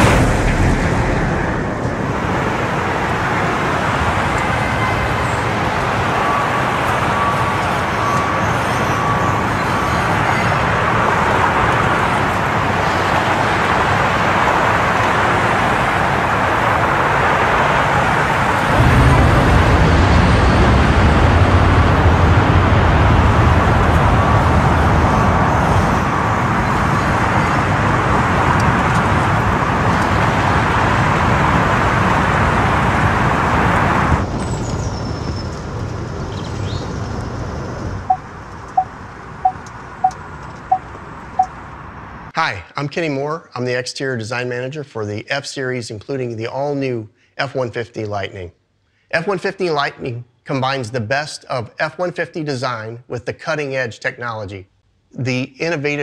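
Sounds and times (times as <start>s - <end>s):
deep rumble: 0.0s - 4.8s, 18.0s - 40.8s.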